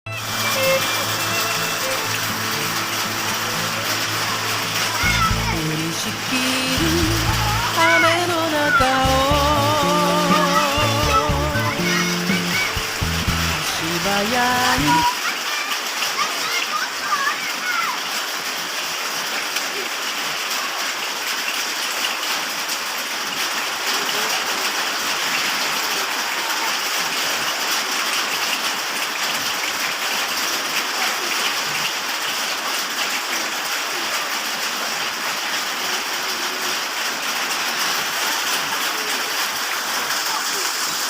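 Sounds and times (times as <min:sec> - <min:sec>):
steady rain falling: 0:00.1 - 0:41.0.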